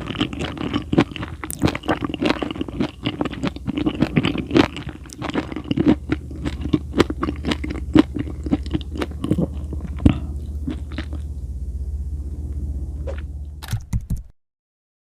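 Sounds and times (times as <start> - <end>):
mouth chewing food: 0.0 - 11.4
steady low hum: 0.0 - 14.1.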